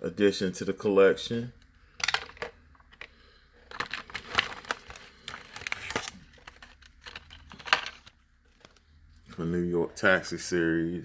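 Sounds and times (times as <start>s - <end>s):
plastic packaging crinkling: 3.6s - 8.8s.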